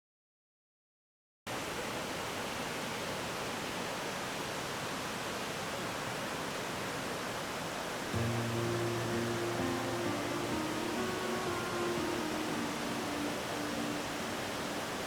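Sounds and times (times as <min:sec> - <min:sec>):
waterfall roaring: 0:01.5 - 0:15.0
steady low tones: 0:08.2 - 0:13.8.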